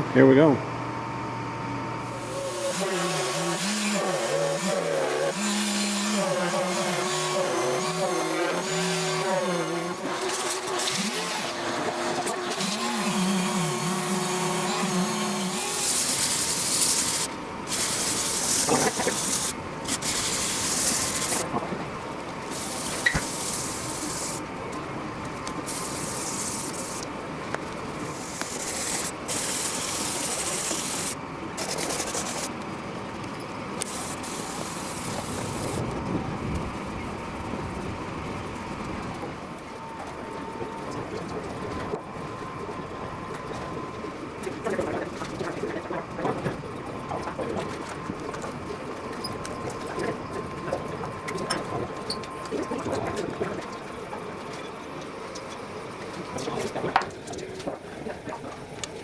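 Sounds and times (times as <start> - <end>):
power sander sanding: 2.1 - 21.4, 22.5 - 24.4, 25.7 - 27.0, 28.1 - 32.5.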